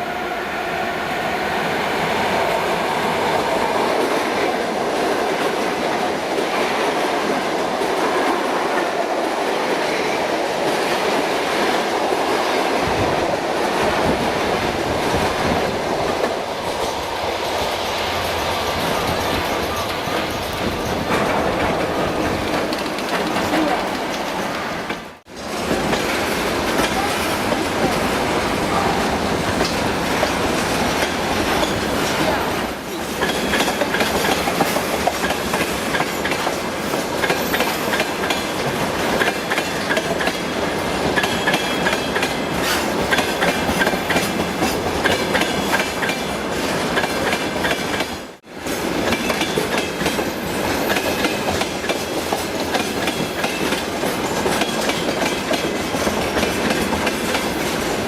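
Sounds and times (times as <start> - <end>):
train wheels clattering: 15.2 - 58.0.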